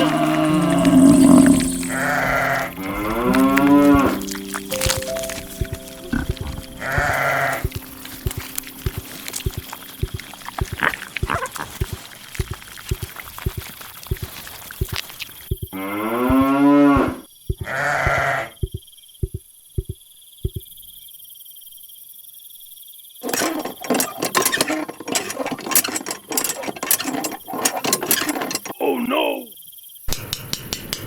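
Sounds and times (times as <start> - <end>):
cow mooing: 0.0 - 12.2.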